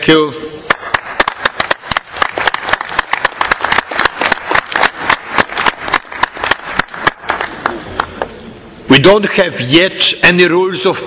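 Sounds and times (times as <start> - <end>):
crowd applauding: 0.7 - 8.3.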